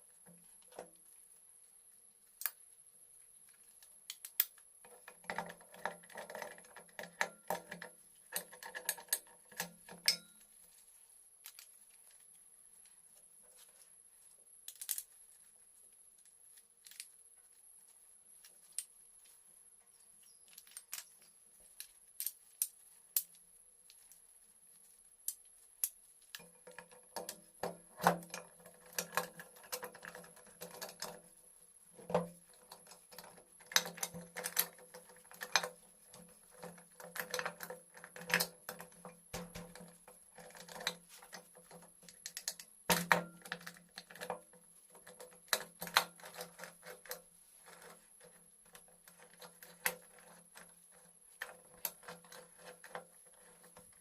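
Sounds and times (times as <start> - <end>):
hand tools clinking on metal parts: 6.4 - 10.5.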